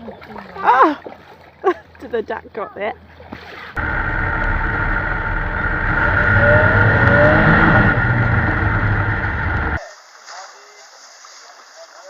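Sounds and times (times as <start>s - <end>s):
faint rising whine: 3.8s - 9.8s
motor running: 3.8s - 9.8s.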